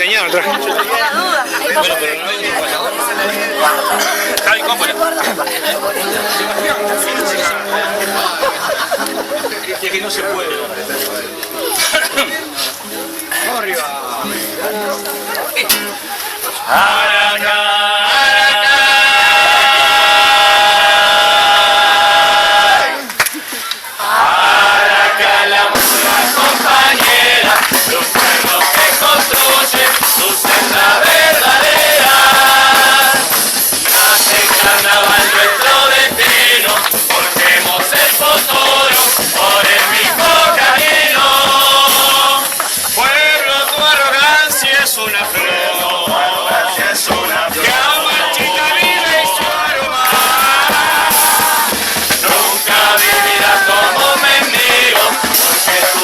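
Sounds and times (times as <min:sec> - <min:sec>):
chorus singing: 0:00.0 - 0:56.0
percussion: 0:00.0 - 0:56.0.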